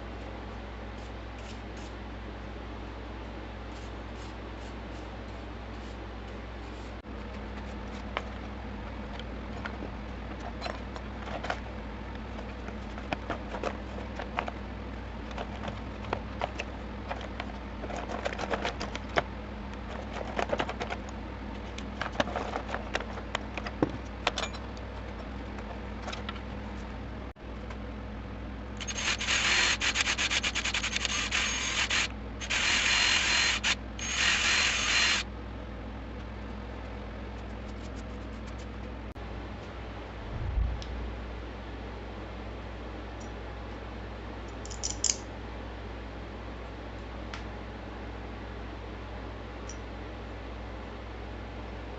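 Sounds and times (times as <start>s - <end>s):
steady low hum: 0.0s - 51.9s
hand work clicks and taps: 44.5s - 45.2s.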